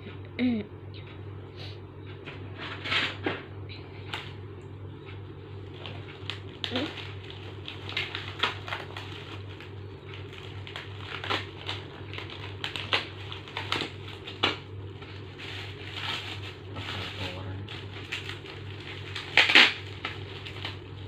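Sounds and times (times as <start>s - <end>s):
packaging crinkling: 5.6s - 21.0s.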